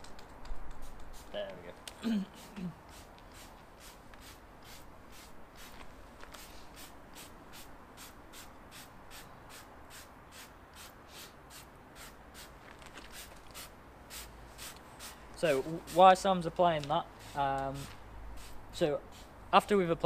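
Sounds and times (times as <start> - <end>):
spray bottle hisses: 2.4 - 5.8, 6.4 - 16.0, 17.2 - 19.4.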